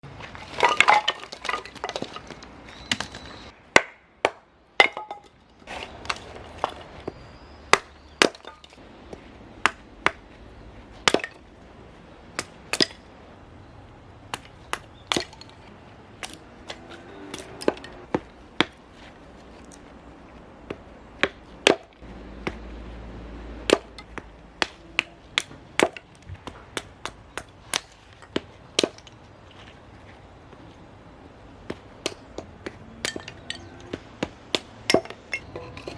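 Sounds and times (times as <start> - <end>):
axe chopping firewood: 3.0 - 10.3, 11.0 - 11.4, 12.3 - 13.1, 14.3 - 19.1, 20.6 - 22.8, 23.5 - 29.2, 31.6 - 35.9.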